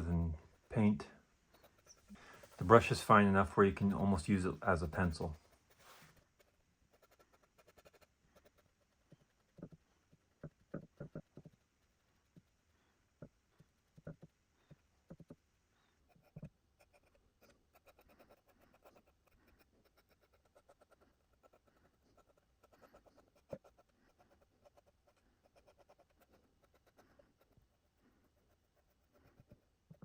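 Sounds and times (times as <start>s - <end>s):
paintbrush scratching on wood: 0.0s - 9.8s.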